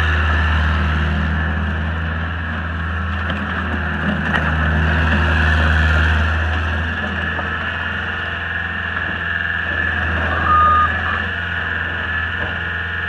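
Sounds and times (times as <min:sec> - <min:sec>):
diesel engine running: 0:00.0 - 0:13.0
short high-pitched beep: 0:10.3 - 0:11.1.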